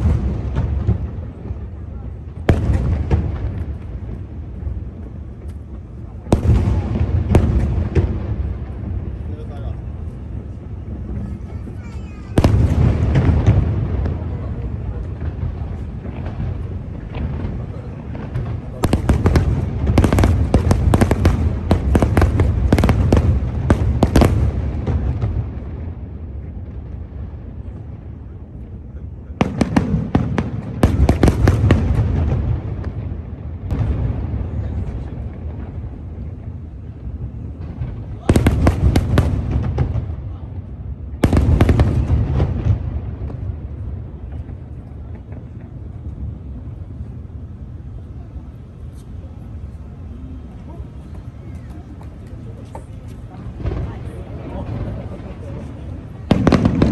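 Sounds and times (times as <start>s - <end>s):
fireworks bangs and crackles: 0.0s - 56.9s
low rolling rumble: 12.4s - 56.9s.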